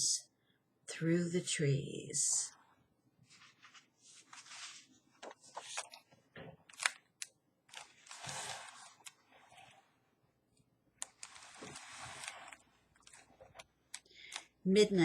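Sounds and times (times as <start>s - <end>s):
paper pages rustling: 3.2s - 10.0s, 11.0s - 14.4s.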